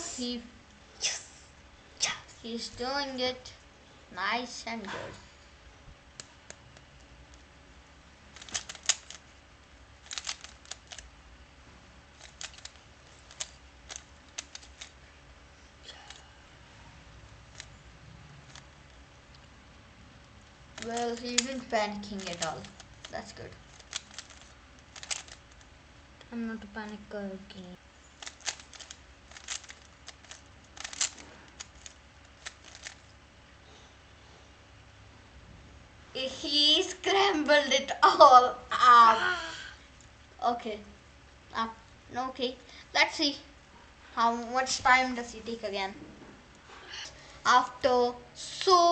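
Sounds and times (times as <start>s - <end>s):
puzzle cube clicking as turned: 8.3s - 9.2s, 10.0s - 11.1s, 12.2s - 15.0s, 17.5s - 17.7s, 18.4s - 18.7s, 20.7s - 25.7s, 28.2s - 33.1s.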